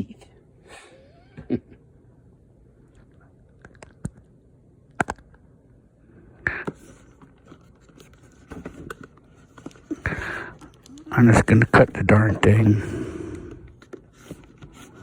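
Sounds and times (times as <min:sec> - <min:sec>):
cardboard scratching and scraping: 0:13.8 - 0:15.0.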